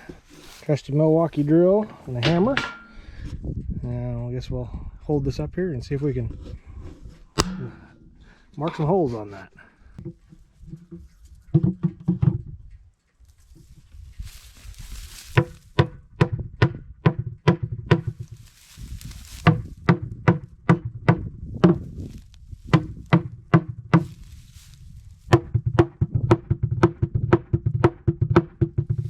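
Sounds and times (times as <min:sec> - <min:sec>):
hammer tapping on plywood: 0:15.4 - 0:18.3, 0:19.4 - 0:22.1, 0:22.7 - 0:24.2, 0:25.3 - 0:29.0.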